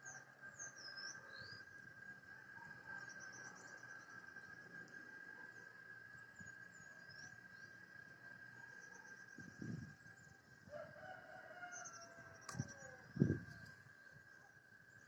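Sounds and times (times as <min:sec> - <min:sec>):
faint bird chirps: 0:00.0 - 0:01.8
rooster crowing: 0:10.7 - 0:13.1.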